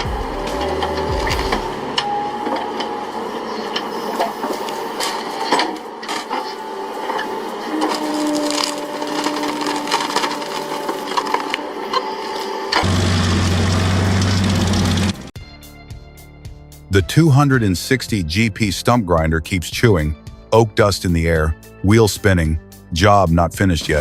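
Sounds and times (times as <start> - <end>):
wood cracking and splintering: 7.8 - 11.6, 12.7 - 15.3.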